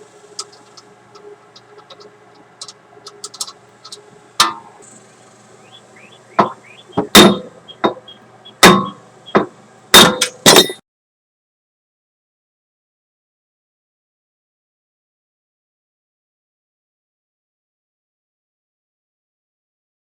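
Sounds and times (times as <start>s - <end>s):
hammer striking steel: 4.4s - 4.8s, 6.0s - 10.8s.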